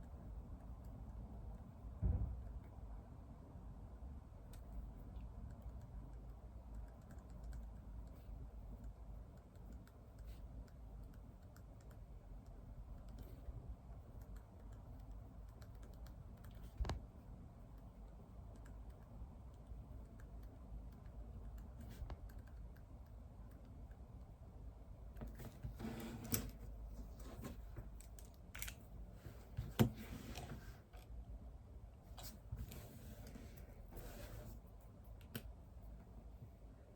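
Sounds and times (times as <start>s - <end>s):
typing on keyboard: 5.5s - 8.2s.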